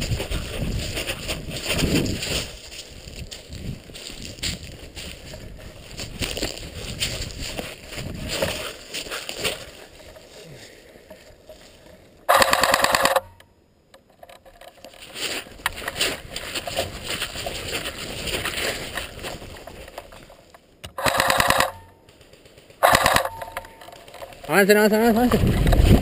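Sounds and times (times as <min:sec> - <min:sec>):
rustling: 0:00.0 - 0:13.4, 0:14.0 - 0:26.0
airsoft gun bursts: 0:12.3 - 0:13.4, 0:20.8 - 0:22.0, 0:22.8 - 0:24.0.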